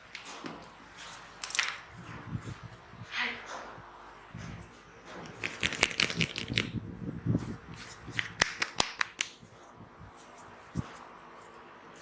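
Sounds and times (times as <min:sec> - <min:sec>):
hands slapping and clapping: 0:05.3 - 0:06.8, 0:08.1 - 0:09.5.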